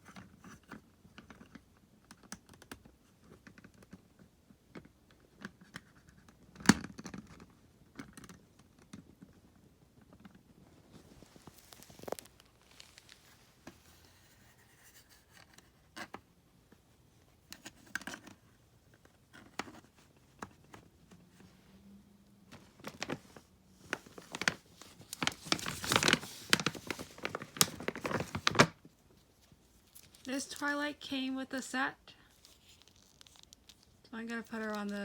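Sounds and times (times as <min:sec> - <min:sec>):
packaging crinkling: 0:10.9 - 0:13.5, 0:22.5 - 0:30.8, 0:32.2 - 0:35.0.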